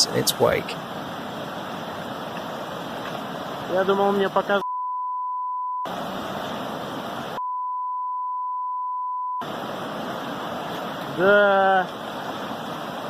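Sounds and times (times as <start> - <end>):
floodwater rushing: 0.0 - 4.6, 5.9 - 7.4, 9.4 - 13.0
censor bleep tone: 4.6 - 5.9, 7.4 - 9.4.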